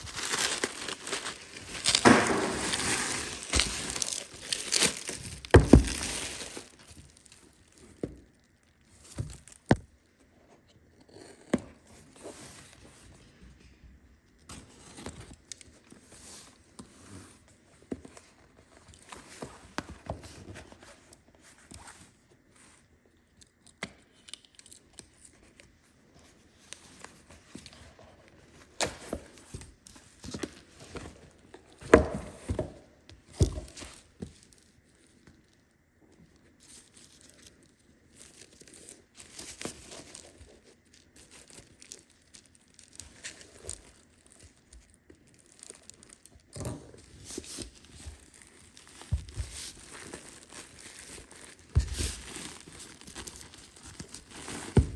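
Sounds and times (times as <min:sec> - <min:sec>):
packaging tearing and rustling: 0:00.0 - 0:09.8, 0:36.6 - 0:54.9.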